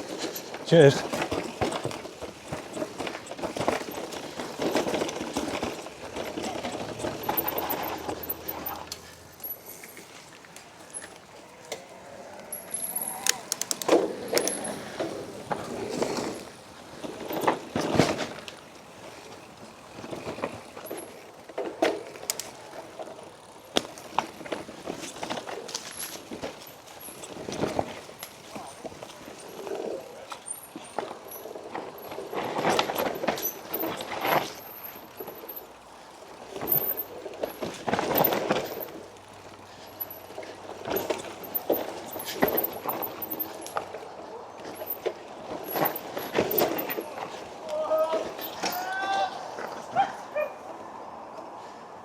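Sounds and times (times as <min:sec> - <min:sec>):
bike knocking and rattling: 0:00.0 - 0:50.5
bike tyres on rough trail: 0:00.0 - 0:52.0.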